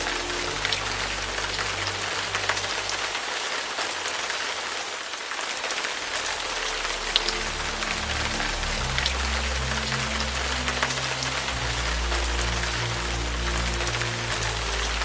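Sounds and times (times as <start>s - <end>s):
steady rain falling: 0.0s - 15.0s.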